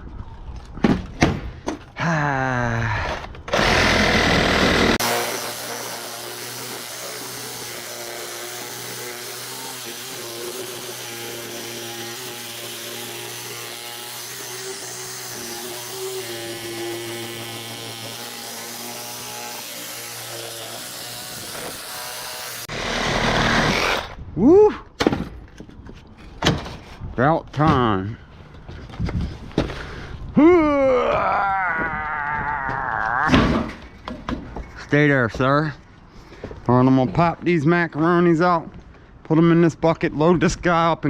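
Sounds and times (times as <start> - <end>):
power saw cutting metal: 3.5 - 24.2.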